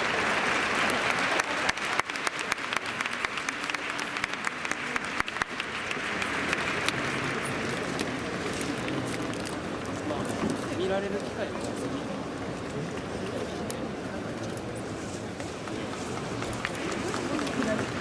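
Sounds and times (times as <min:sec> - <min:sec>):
crowd applauding: 0:00.0 - 0:09.4, 0:16.1 - 0:18.0.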